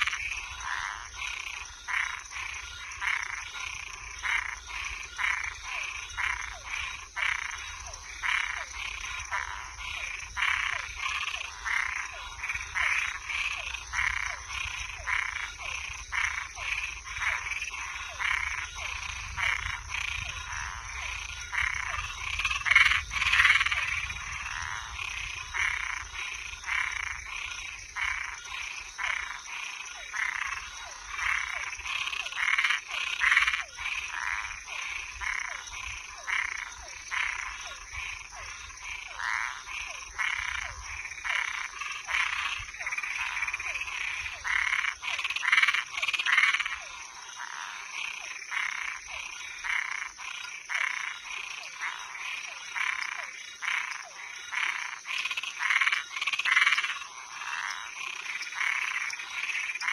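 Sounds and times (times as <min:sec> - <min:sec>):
frogs calling: 0:00.0 - 0:59.9.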